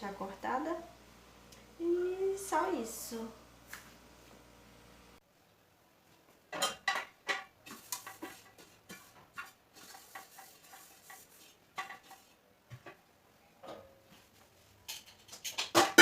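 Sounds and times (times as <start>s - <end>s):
dishes and cutlery clinking: 6.5s - 12.2s.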